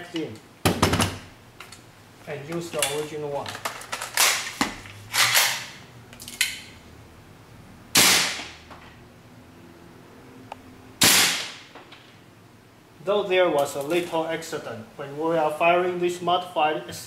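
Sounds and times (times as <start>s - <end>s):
airsoft pistol shots: 8.0s - 8.5s, 11.0s - 11.7s.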